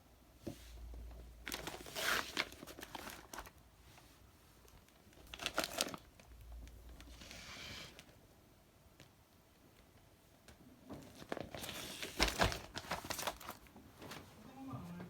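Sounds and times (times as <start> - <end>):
packaging crinkling: 1.4 - 3.6, 4.7 - 7.1, 11.0 - 13.7.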